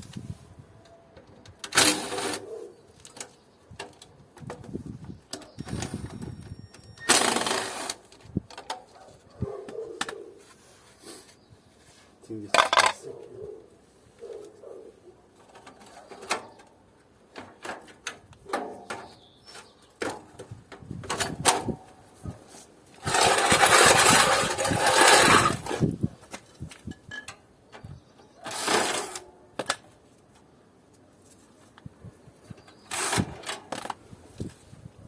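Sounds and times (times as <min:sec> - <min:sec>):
clicks and knocks of metal parts: 0:06.7 - 0:09.0, 0:12.5 - 0:13.0, 0:15.4 - 0:21.8, 0:23.0 - 0:27.9.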